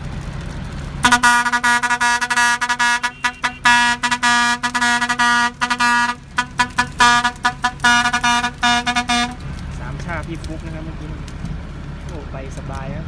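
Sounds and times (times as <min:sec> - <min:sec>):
vehicle horn tooting: 0:01.0 - 0:09.5.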